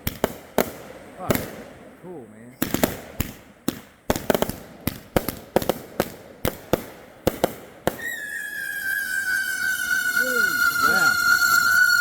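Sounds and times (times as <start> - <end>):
fireworks bangs: 0.0 - 2.0, 2.6 - 12.0
high firework whistle: 7.9 - 12.0.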